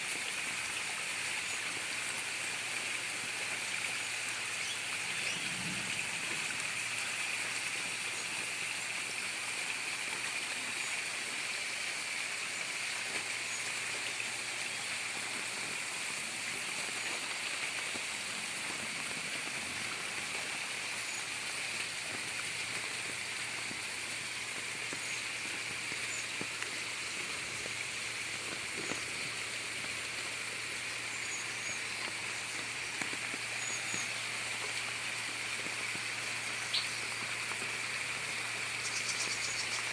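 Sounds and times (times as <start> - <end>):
gurgling rainwater: 0.0 - 39.9
steady rain: 0.0 - 39.9
faint bird chirps: 38.8 - 39.9.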